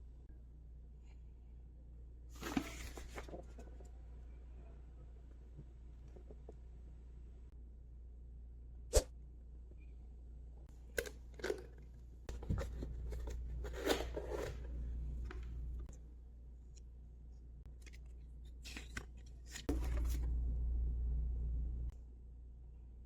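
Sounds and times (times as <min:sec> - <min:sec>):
low steady hum: 0:00.0 - 0:23.0.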